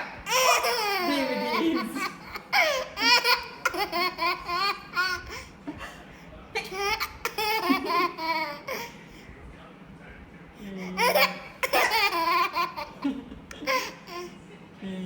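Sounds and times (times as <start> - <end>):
baby laughing: 0.0 - 5.5, 6.6 - 8.9, 11.0 - 14.3
baby wailing: 0.2 - 5.4.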